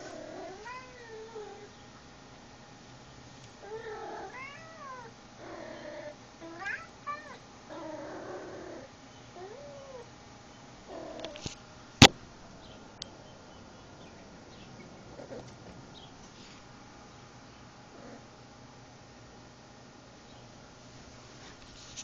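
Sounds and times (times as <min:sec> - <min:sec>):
cat cooing and chirping: 0:00.0 - 0:01.8, 0:03.6 - 0:10.1, 0:10.9 - 0:11.5.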